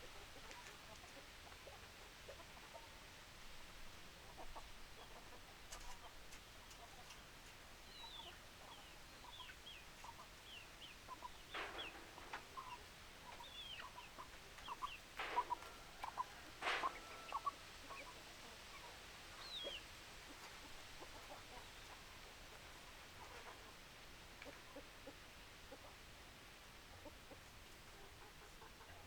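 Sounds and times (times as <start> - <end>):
chickens calling: 4.0 - 26.0
rustling: 11.4 - 18.4.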